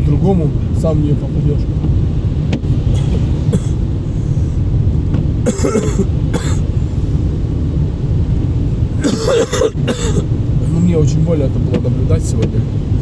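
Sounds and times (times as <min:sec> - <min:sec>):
car cabin rumble: 0:00.0 - 0:13.0
man coughing: 0:02.9 - 0:03.8, 0:05.5 - 0:06.7, 0:09.0 - 0:10.3.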